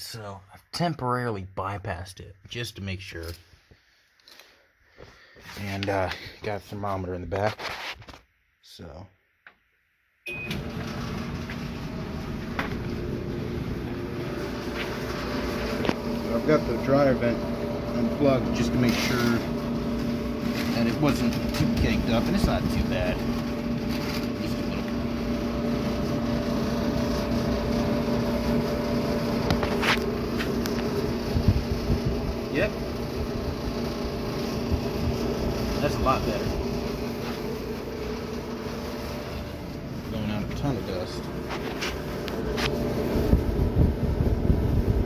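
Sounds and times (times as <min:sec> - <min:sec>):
dryer beep: 0:10.3 - 0:14.6
dryer motor humming with rushing air: 0:10.3 - 0:45.0.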